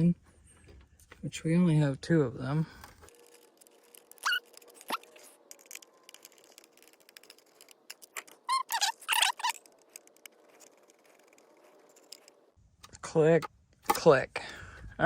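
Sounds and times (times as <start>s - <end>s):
squeaks: 3.2s - 12.3s.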